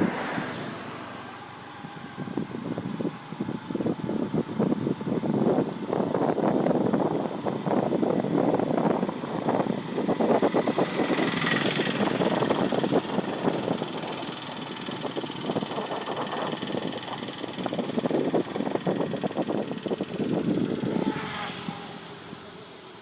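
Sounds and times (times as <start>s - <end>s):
vehicle passing hiss: 0.0s - 3.3s, 9.5s - 23.0s
tyres on flooded road: 0.0s - 5.1s, 9.8s - 23.0s.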